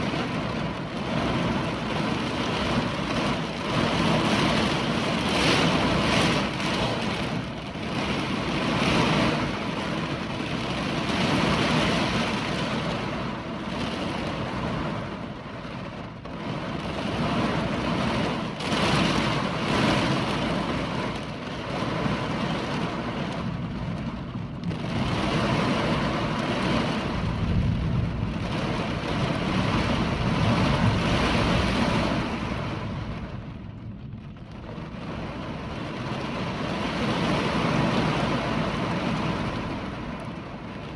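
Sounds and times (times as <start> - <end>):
strong gusting wind: 0.0 - 40.9.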